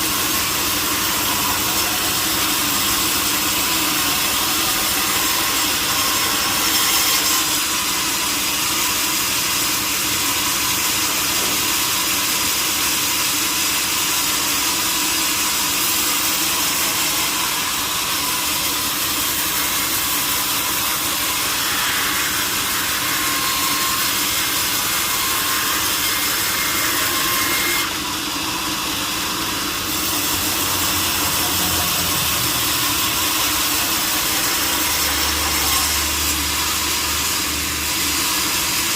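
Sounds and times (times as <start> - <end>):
sawmill saw cutting log: 0.0 - 38.9.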